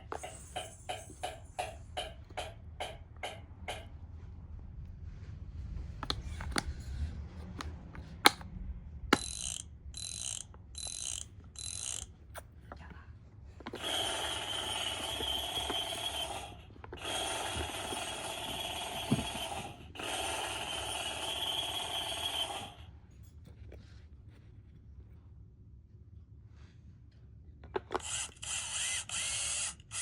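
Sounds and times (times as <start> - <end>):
electronic tool sound effects: 9.2 - 12.1
puzzle pieces clicking: 9.2 - 12.1.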